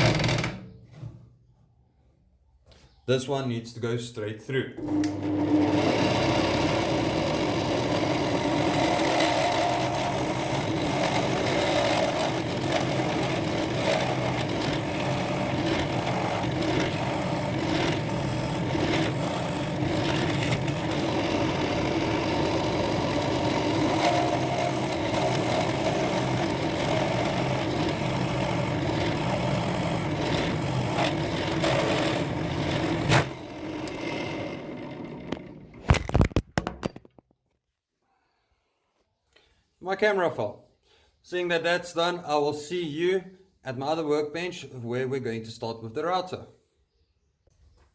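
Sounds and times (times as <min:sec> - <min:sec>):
electric drill boring through wood: 0:00.0 - 0:00.6, 0:04.8 - 0:35.7.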